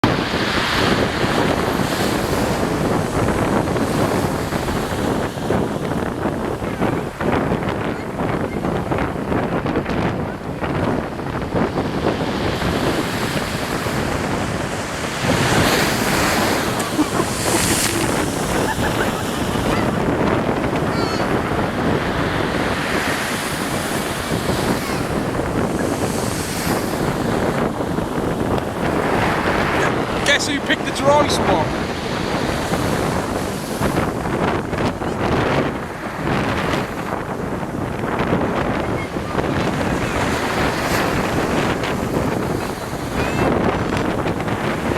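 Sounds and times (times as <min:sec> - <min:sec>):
strong wind buffeting microphone: 0:00.0 - 0:44.9
surf breaking on shore: 0:00.0 - 0:44.9.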